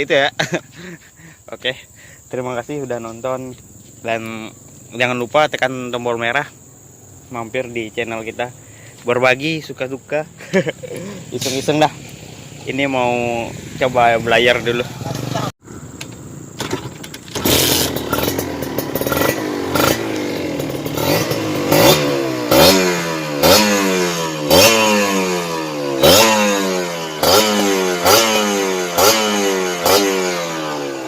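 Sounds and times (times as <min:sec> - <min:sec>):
two-stroke motorcycle engine revving: 0:10.8 - 0:15.6, 0:16.6 - 0:31.0.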